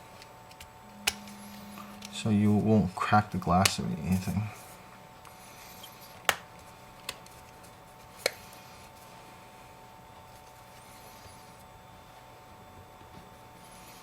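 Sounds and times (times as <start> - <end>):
faint steady tone: 0.0 - 6.1.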